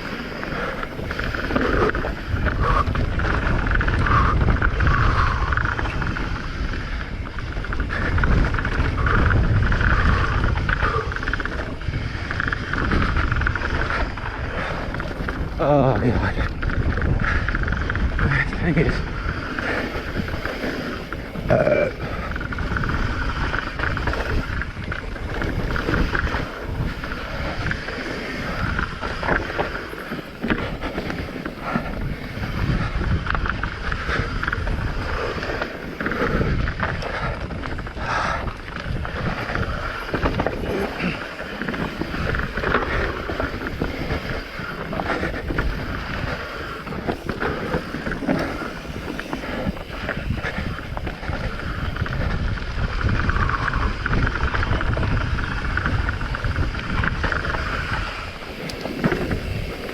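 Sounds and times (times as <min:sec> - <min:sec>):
bike rolling and rattling on trail: 0:00.0 - 0:59.9
wind rushing over microphone: 0:00.0 - 0:59.9.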